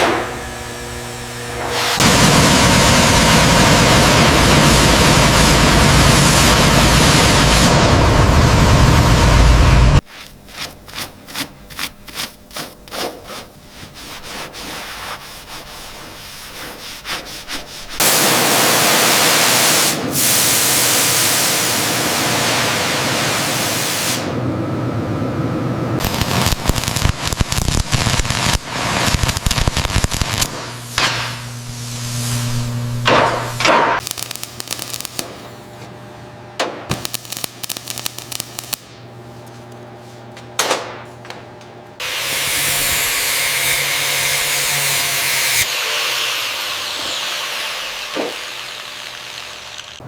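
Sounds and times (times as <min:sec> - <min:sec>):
hand sanding bodywork: 0:10.0 - 0:18.0
loud steady hiss: 0:18.0 - 0:24.3, 0:26.0 - 0:35.4.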